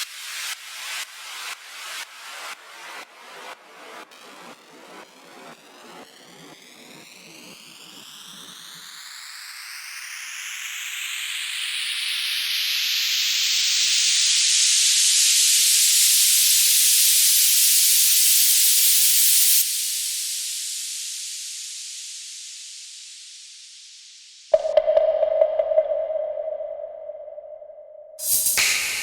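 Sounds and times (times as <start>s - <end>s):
white-noise riser hiss: 28.2s - 29.0s.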